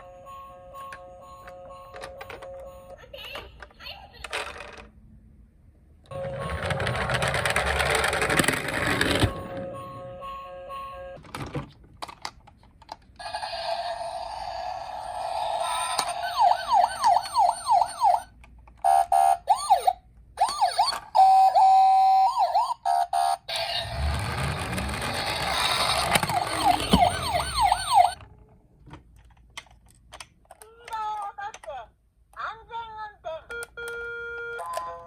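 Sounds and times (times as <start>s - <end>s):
toy police car siren: 0.0s - 3.0s, 6.1s - 8.0s, 9.0s - 11.2s, 13.2s - 28.2s, 33.5s - 35.0s.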